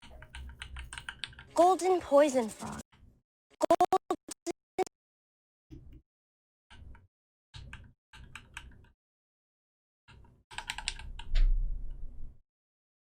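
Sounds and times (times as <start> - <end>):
keyboard typing: 3.6 - 4.6.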